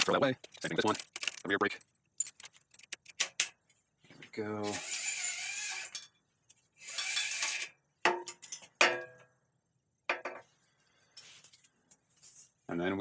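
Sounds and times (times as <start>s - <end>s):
brake cable zipping through housing: 4.6s - 6.0s.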